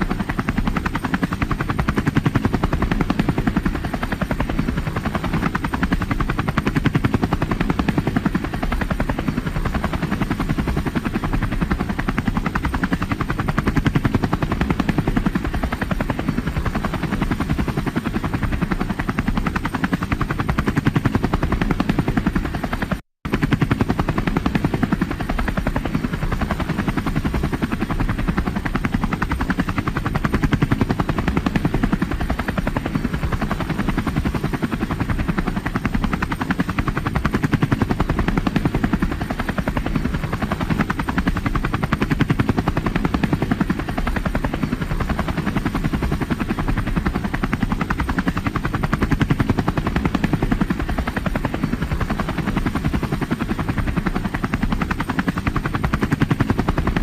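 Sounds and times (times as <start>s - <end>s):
helicopter rotor blades chopping: 0.0s - 57.0s.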